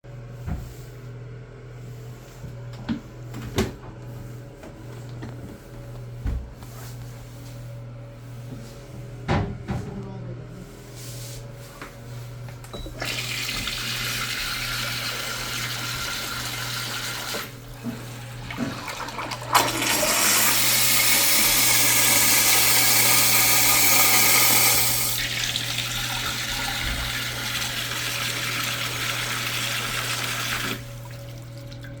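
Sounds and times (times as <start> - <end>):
toilet flushing: 12.8 - 32.0.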